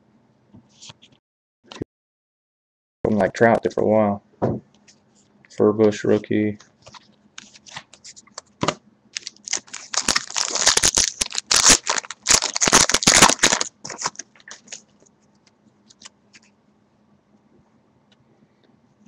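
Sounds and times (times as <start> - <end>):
cards being flipped through: 6.8 - 14.9.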